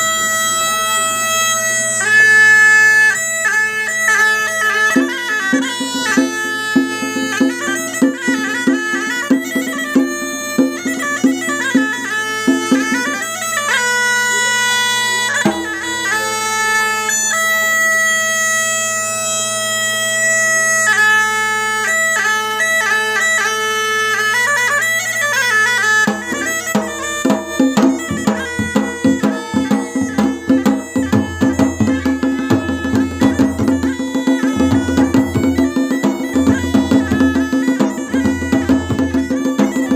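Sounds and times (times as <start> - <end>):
bagpipe melody over drone: 0.0 - 39.9
drums beating: 4.8 - 16.5, 25.9 - 39.9.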